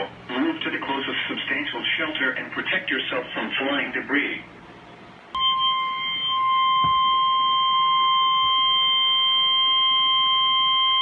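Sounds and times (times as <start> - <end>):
steady warning alarm tone: 5.4 - 11.0.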